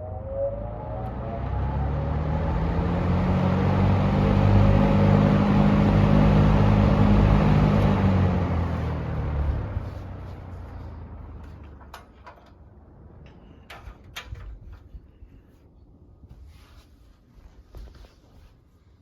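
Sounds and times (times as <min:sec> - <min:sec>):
box fan motor hum: 0:00.0 - 0:11.7
rush of air from fan blades: 0:00.0 - 0:12.2.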